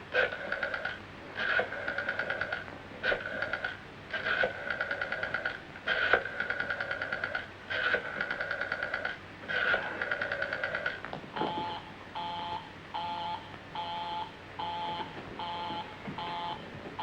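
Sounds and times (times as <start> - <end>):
telephone busy signal: 11.4 - 16.7
telephone bell trilling: 11.5 - 16.7.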